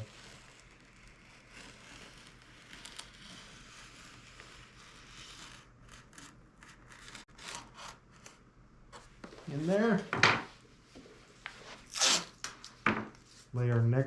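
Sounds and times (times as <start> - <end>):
blade scraping through wood: 0.0 - 8.3.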